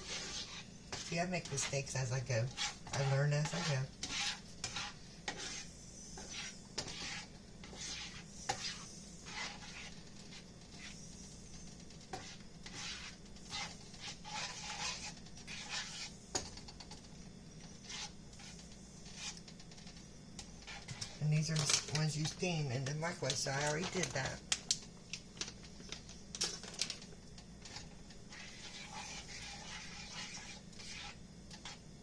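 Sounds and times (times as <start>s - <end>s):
utensil scraping in frying pan: 0.0s - 16.2s, 17.6s - 22.2s, 27.6s - 32.0s.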